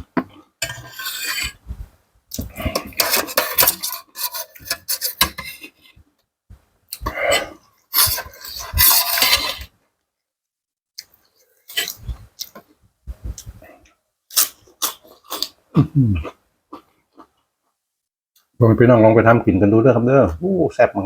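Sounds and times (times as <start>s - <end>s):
cutlery clinking against a dish: 2.7s - 5.5s.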